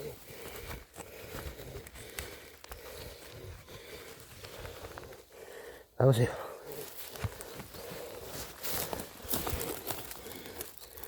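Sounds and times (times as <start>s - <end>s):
footsteps through brush: 6.7s - 11.0s
twigs snapping: 8.8s - 11.0s.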